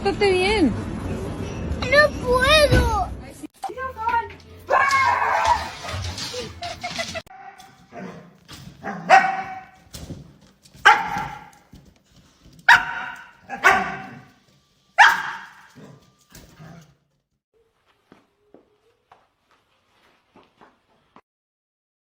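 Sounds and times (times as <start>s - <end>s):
dog barking: 7.3s - 9.8s, 10.8s - 11.5s, 12.7s - 14.3s, 15.0s - 16.0s
dog yipping: 8.8s - 9.8s, 10.8s - 11.5s, 12.7s - 14.2s, 15.0s - 15.8s.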